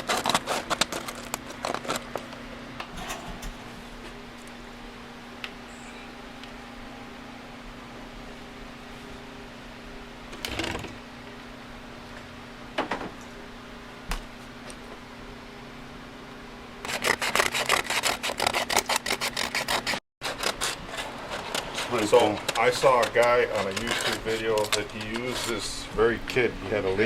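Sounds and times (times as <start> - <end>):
sandpaper sanding plastic: 0.0 - 2.0, 16.8 - 25.8.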